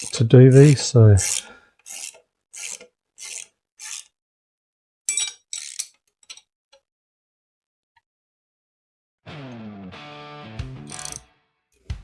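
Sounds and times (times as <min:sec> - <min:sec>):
torque wrench ratcheting: 0:00.0 - 0:04.1, 0:05.5 - 0:06.0, 0:10.9 - 0:11.2
metal clinks of tool on bolt: 0:05.1 - 0:06.5, 0:10.9 - 0:11.2.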